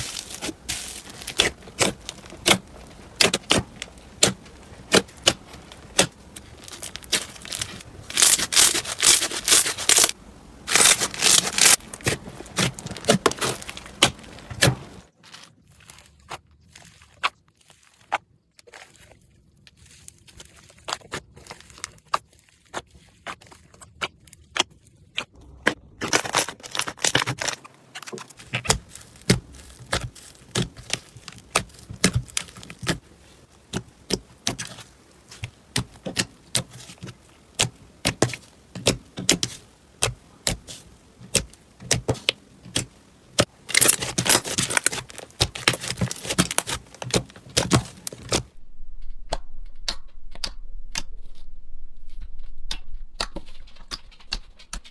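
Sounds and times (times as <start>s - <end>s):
crunchy slime clicking and popping: 0.0s - 15.0s, 23.2s - 48.5s.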